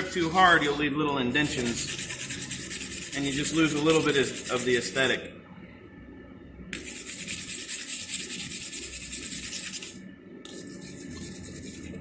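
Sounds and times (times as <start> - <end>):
wire brush scrubbing metal: 1.5 - 4.9.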